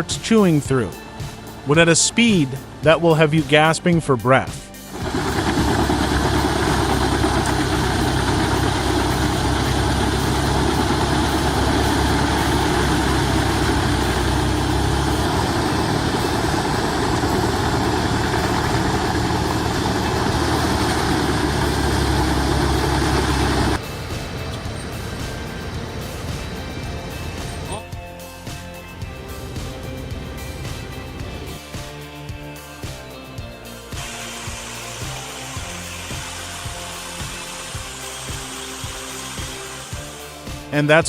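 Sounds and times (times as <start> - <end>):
large machine engine humming: 4.7 - 40.8.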